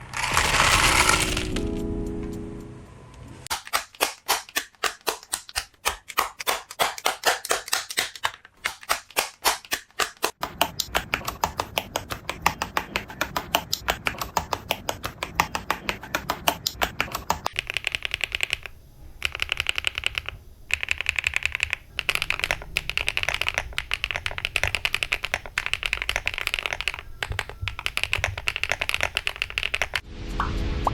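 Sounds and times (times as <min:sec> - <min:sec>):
mechanical keyboard typing: 0:00.0 - 0:01.8, 0:10.8 - 0:30.0.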